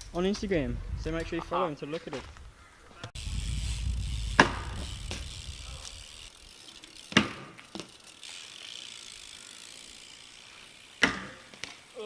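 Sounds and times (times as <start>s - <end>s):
bike tyre rumble: 0.0s - 12.0s
bike knocking on ground: 11.0s - 11.8s.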